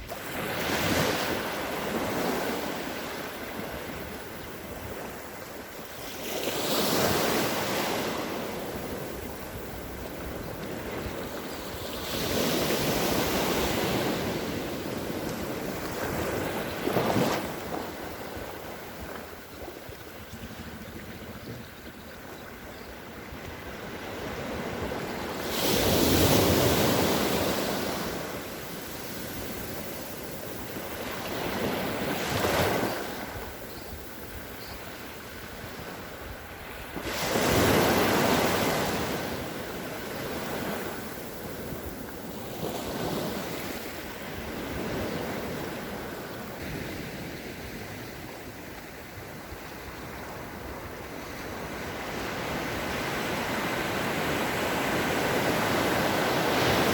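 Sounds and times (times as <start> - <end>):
waves breaking: 0.0 - 21.1, 23.3 - 33.6.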